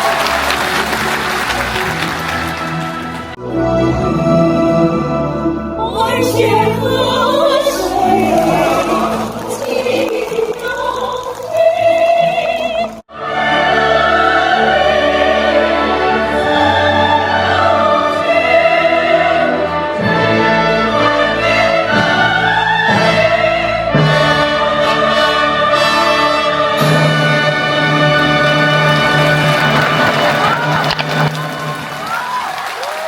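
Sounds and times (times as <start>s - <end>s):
orchestra playing classical music: 0.0s - 32.0s
singers with vibrato: 5.8s - 32.4s.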